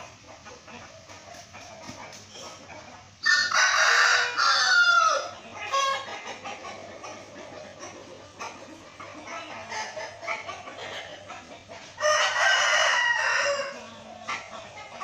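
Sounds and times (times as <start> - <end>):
rooster crowing: 3.2 - 5.9, 12.0 - 13.9.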